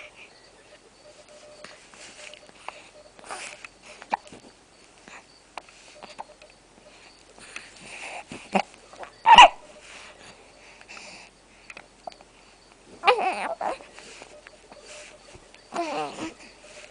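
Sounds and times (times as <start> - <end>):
soft breathing: 0.0 - 16.9
squeaky hiccups: 8.5 - 9.7, 13.0 - 13.8, 15.7 - 16.4.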